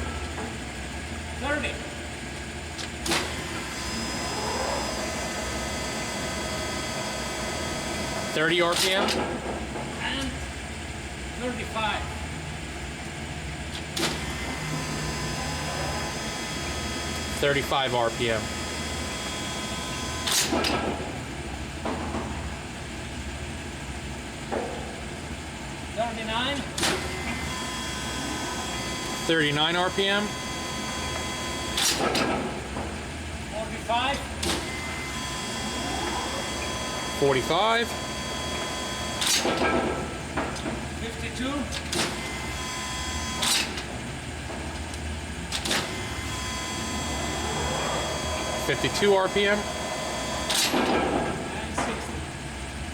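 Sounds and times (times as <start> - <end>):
faint high gear whine: 2.5 - 12.0, 13.7 - 21.7, 25.5 - 52.9
lathe running: 3.0 - 9.0, 14.0 - 21.5, 26.8 - 52.9.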